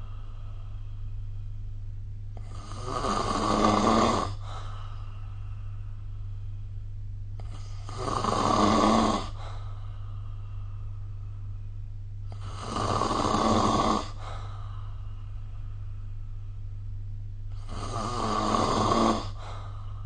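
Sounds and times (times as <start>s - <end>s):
steady low hum: 0.0s - 20.0s
person snoring: 2.4s - 5.1s, 7.4s - 9.6s, 12.3s - 15.0s, 17.5s - 19.8s.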